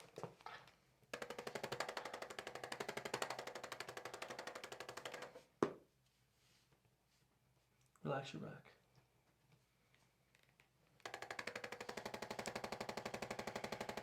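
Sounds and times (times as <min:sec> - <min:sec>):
small mechanical device rattling: 0:01.2 - 0:05.4, 0:11.0 - 0:14.0.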